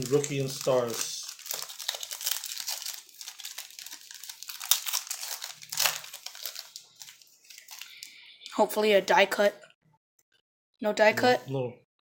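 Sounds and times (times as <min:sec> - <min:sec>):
plastic wrapper crinkling and tearing: 0:00.0 - 0:08.3.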